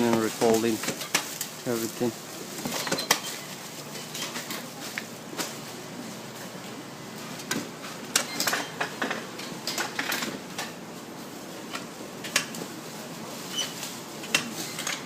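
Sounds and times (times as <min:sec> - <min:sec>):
garments and packaging rustling: 0:00.0 - 0:06.4.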